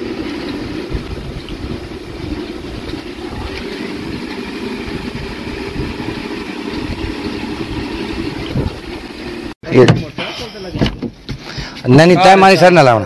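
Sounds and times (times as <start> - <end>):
wind buffeting microphone: 0.0 - 9.2
vehicle engine drone: 0.0 - 9.6
road rumble: 0.0 - 12.0.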